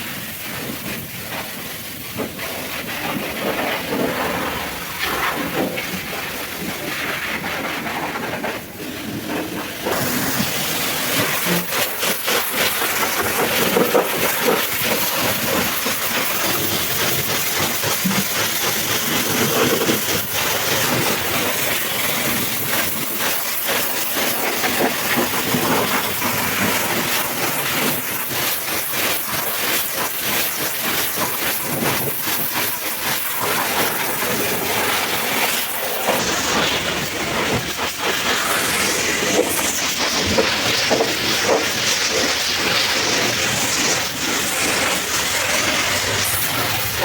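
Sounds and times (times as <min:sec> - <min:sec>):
pressure washer spray hiss: 0:00.0 - 0:47.0.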